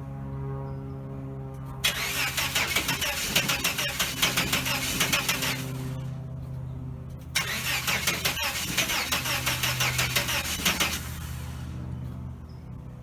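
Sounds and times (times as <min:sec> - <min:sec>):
steady low hum: 0:00.0 - 0:13.0
engine cranking on starter: 0:01.8 - 0:06.1, 0:07.4 - 0:11.8.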